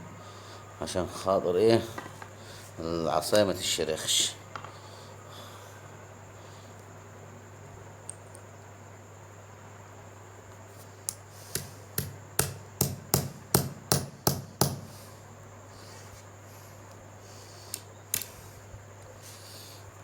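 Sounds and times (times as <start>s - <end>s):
hammer hitting nail into wood: 11.5s - 14.9s.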